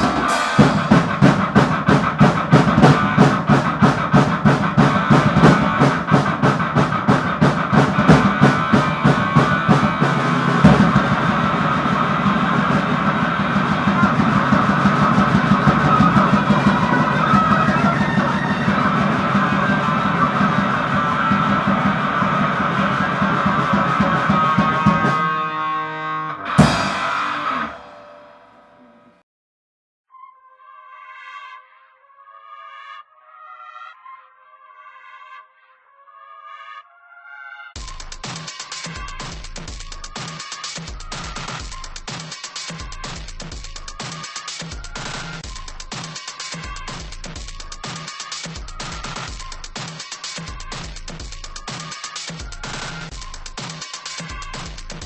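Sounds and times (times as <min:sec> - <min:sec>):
loud crashing hit: 0:00.0 - 0:17.6, 0:26.6 - 0:28.7
fast drum beats with cymbal: 0:00.0 - 0:25.4, 0:26.5 - 0:28.3, 0:37.8 - 0:55.0
sustained electric guitar: 0:00.0 - 0:29.2.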